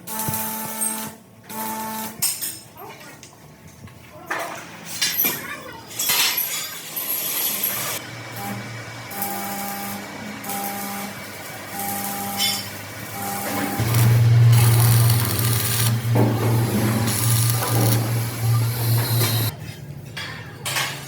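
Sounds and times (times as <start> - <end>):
electric machine humming: 8.0 - 19.5
high tone switching on and off: 8.2 - 19.5.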